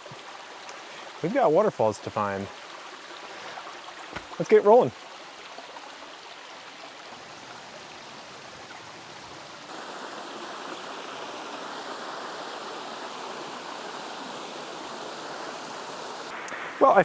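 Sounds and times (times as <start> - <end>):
creek water flowing: 0.0 - 17.0
waterfall rushing: 7.2 - 17.0.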